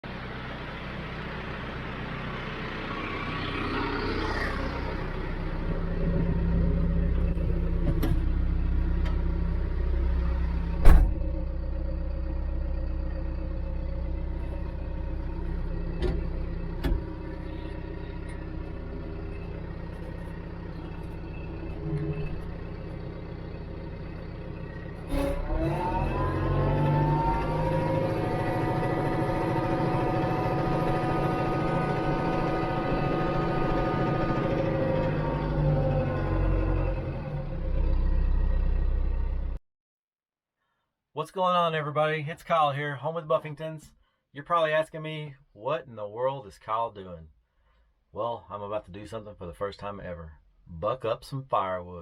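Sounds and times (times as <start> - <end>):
engine running with low hum: 0.0 - 39.6.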